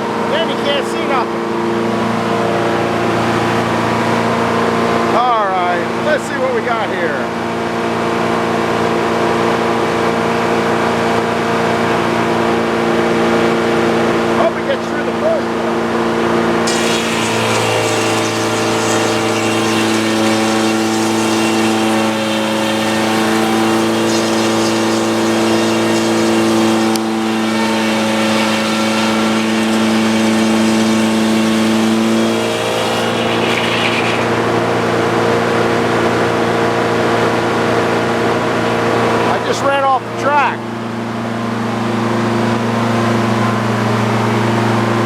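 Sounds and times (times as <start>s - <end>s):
sawmill machine hum: 16.6s - 35.6s.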